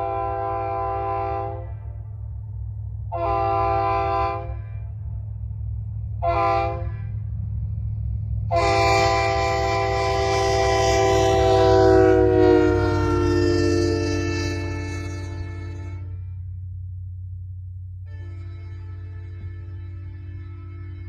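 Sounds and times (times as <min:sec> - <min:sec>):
locomotive air horn: 0:00.0 - 0:02.0, 0:03.1 - 0:05.0, 0:06.2 - 0:07.3, 0:08.5 - 0:16.6, 0:18.1 - 0:21.0
steady low hum: 0:00.0 - 0:21.0.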